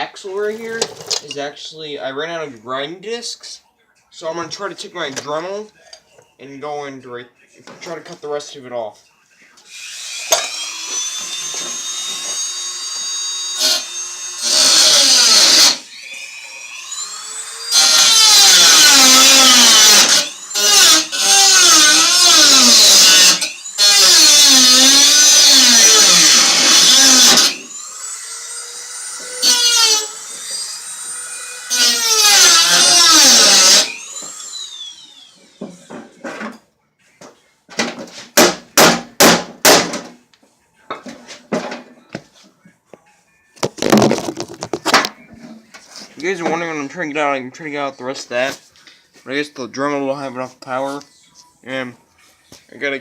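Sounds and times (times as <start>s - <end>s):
rotary tool grinding metal: 9.7s - 35.6s.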